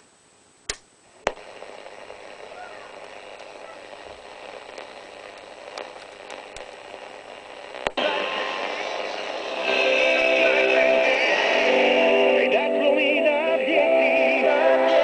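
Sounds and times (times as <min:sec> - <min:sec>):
sharp click: 0:00.7 - 0:01.4
radio static hiss: 0:01.0 - 0:15.0
radio station signal: 0:01.4 - 0:15.0.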